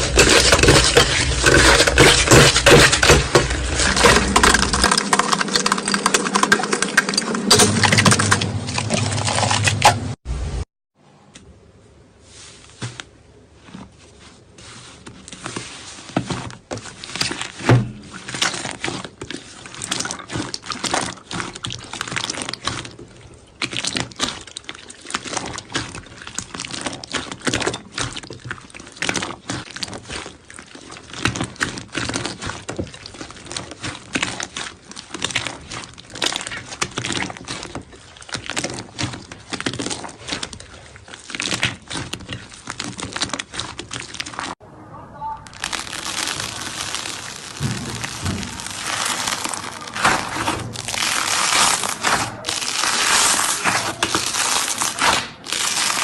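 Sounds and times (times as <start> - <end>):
slime squishing with wet clicks: 16.8 - 44.6, 45.4 - 56.0.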